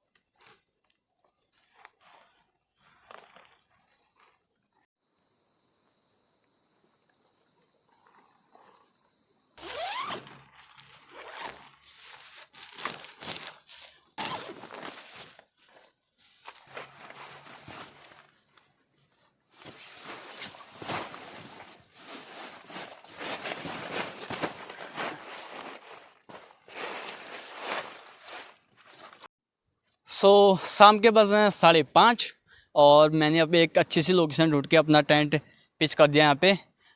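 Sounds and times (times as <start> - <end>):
high insect trill: 0.0 - 12.2
rustling and scuffing: 10.2 - 29.3.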